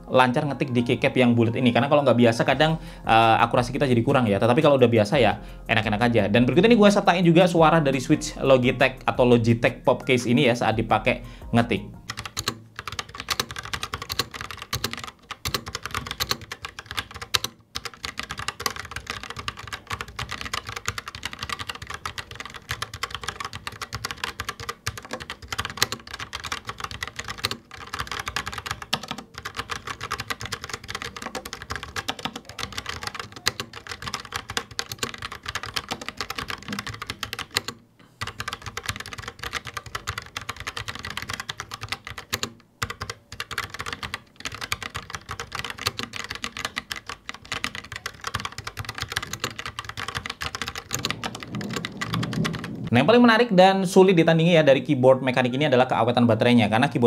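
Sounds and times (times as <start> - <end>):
mechanical keyboard typing: 12.0 - 52.9.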